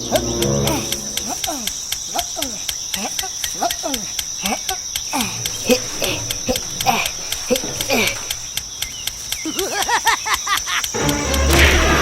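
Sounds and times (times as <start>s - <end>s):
sliding pitch calls: 0.0s - 9.3s
crickets trilling: 0.0s - 11.5s.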